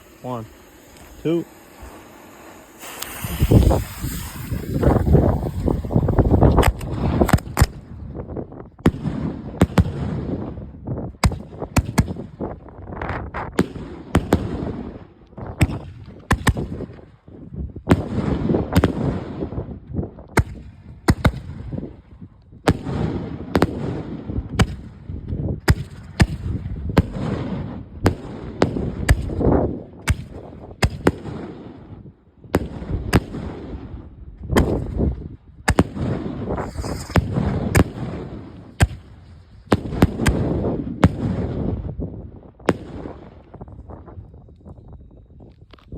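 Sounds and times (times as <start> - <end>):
continuous rushing noise: 0.0 - 7.6
fireworks pops and bangs: 2.7 - 17.1, 17.8 - 44.7.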